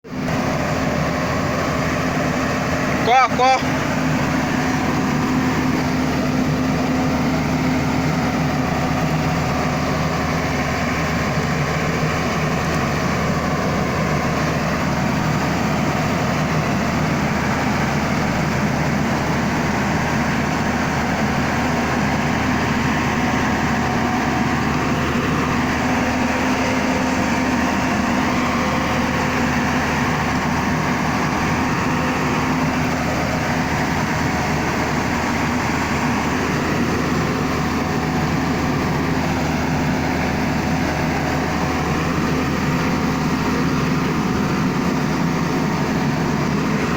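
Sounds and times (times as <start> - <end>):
vehicle engine droning: 0.0 - 46.9.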